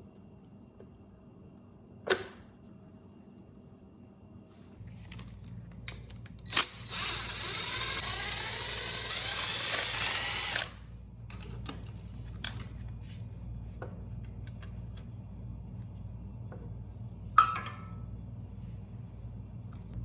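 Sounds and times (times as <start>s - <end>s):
steady low hum: 0.0s - 20.0s
power drill driving fastener: 6.4s - 10.8s.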